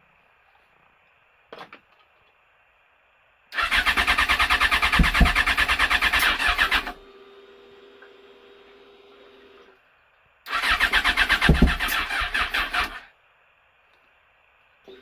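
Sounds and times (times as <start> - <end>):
faint steady hum: 0.0 - 15.0
motorcycle starter cranking: 3.6 - 7.0, 10.5 - 13.0.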